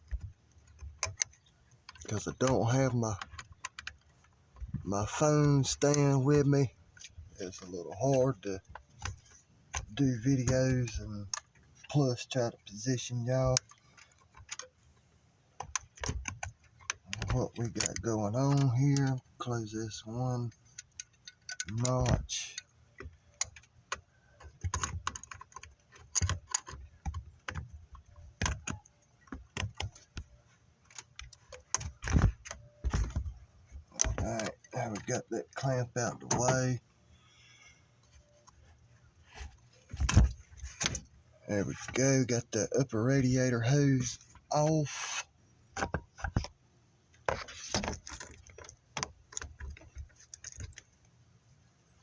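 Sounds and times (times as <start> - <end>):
hand tools and metal parts clinking: 16.9 - 30.2, 47.4 - 51.0
metallic clicks and clanks: 20.5 - 36.8, 47.2 - 51.0.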